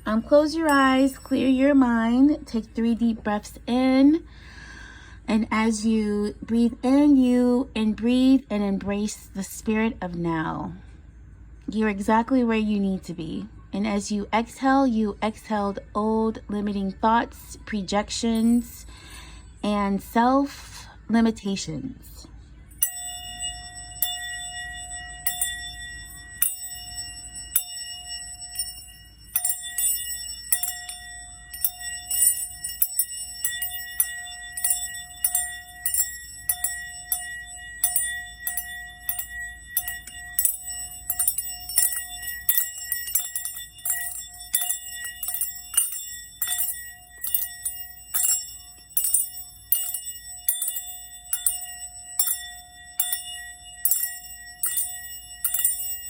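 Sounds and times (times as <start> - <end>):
singing bowl ringing: 0.0 - 3.2, 22.7 - 56.0
jingling high notes: 22.8 - 56.0.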